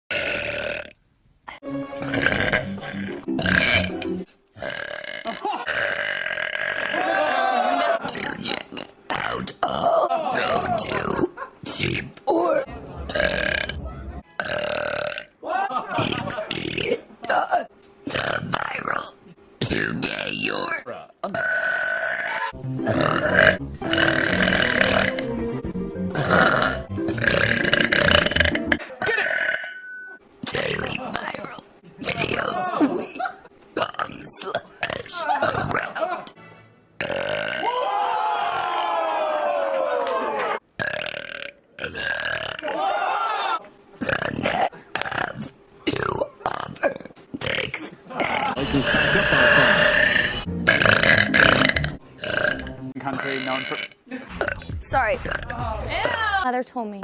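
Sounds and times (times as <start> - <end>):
woman belching: 0.1 - 1.0, 2.0 - 7.0, 13.1 - 13.8, 14.4 - 15.3, 21.2 - 25.3, 26.1 - 29.9, 33.8 - 35.9, 37.0 - 37.7, 40.8 - 42.7, 44.0 - 56.4
music: 1.6 - 4.3, 12.7 - 14.3, 22.6 - 28.9, 36.4 - 37.0, 50.4 - 53.4, 54.2 - 56.5.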